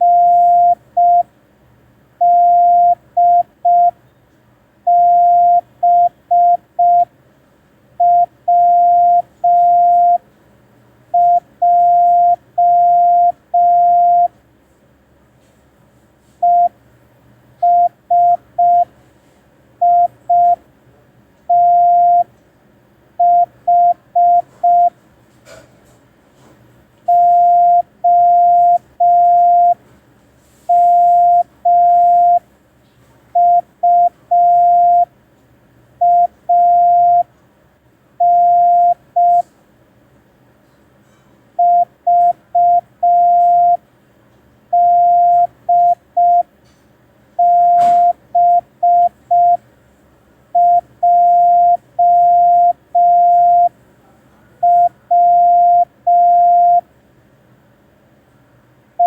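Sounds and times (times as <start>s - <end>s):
morse code tone: 0.0s - 1.3s, 2.2s - 4.0s, 4.9s - 7.1s, 8.0s - 10.2s, 11.2s - 14.3s, 16.4s - 16.7s, 17.6s - 18.9s, 19.8s - 20.6s, 21.5s - 22.3s, 23.2s - 24.9s, 27.1s - 29.8s, 30.7s - 32.4s, 33.4s - 35.1s, 36.0s - 37.3s, 38.2s - 39.5s, 41.6s - 43.8s, 44.7s - 46.5s, 47.4s - 49.6s, 50.6s - 53.7s, 54.6s - 56.8s.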